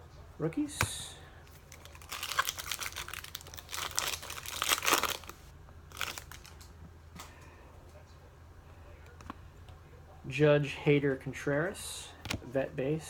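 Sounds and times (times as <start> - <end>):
foil wrapper crinkling: 1.5 - 6.7.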